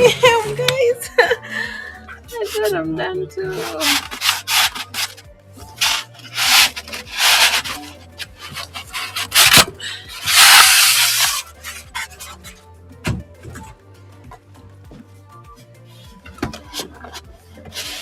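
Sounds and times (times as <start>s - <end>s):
packaging rustling and scraping: 3.5s - 12.6s.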